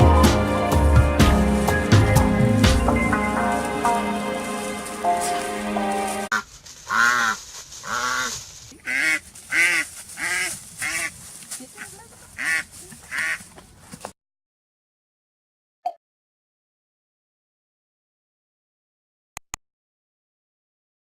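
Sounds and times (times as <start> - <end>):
duck quacking: 6.3 - 13.5.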